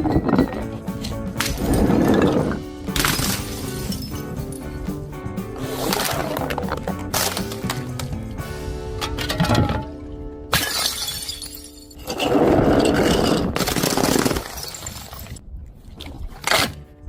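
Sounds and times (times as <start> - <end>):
background music: 0.0 - 14.0
glass bottles shattering: 10.5 - 15.3.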